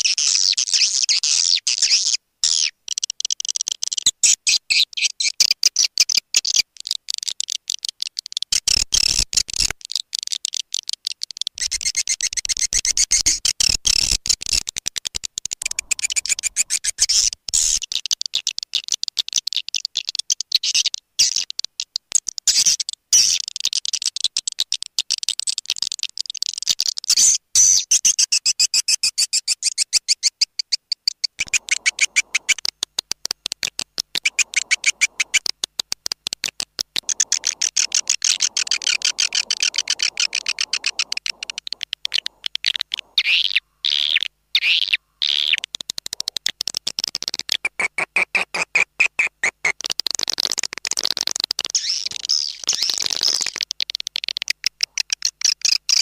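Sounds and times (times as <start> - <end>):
swiftlets twittering chirps: 15.6 - 17.8, 31.3 - 32.9, 33.6 - 35.8, 37.0 - 45.6.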